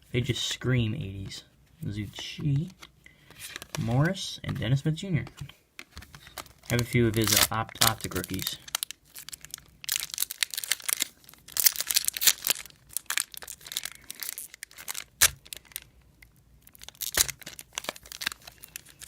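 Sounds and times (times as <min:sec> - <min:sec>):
foil wrapper crinkling: 0:06.0 - 0:16.0, 0:16.6 - 0:19.0.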